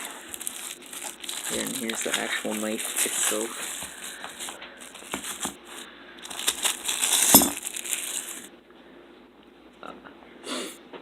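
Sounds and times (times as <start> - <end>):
packaging rustling and crinkling: 0.0 - 8.5.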